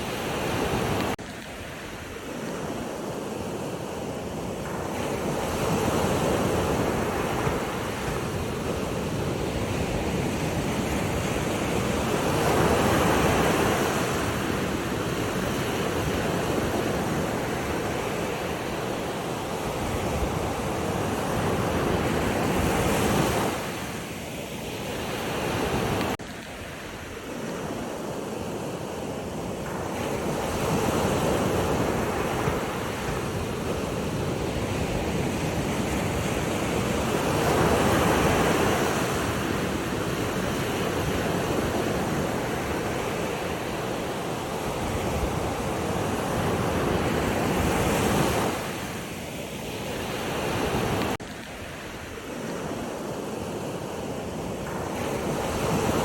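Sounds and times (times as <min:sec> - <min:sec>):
sea waves washing in: 0:00.0 - 0:56.0.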